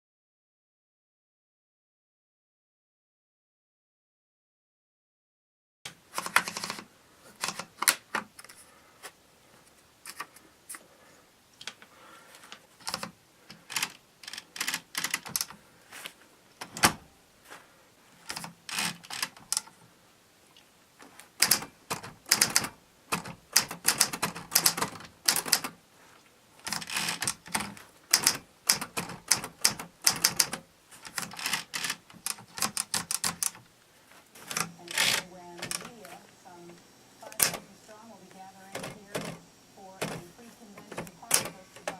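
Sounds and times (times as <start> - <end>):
manual typewriter clacking: 5.9 - 8.3, 12.8 - 15.6, 16.6 - 17.0, 18.2 - 19.8, 21.3 - 25.8, 26.6 - 33.7, 34.4 - 36.3, 37.2 - 37.7, 38.6 - 39.4, 40.0 - 41.9.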